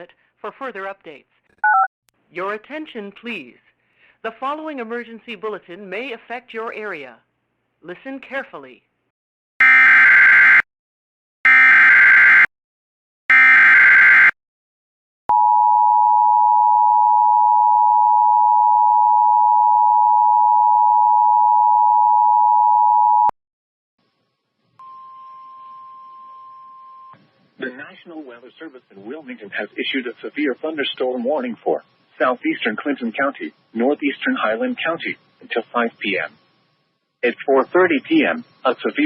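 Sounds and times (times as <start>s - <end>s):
faint steady tone: 24.8s - 27.3s.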